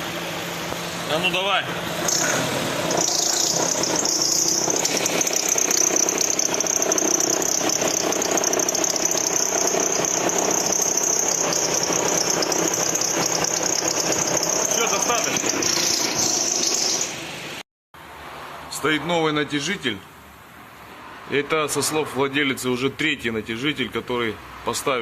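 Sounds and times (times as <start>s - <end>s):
car engine running: 1.8s - 17.1s.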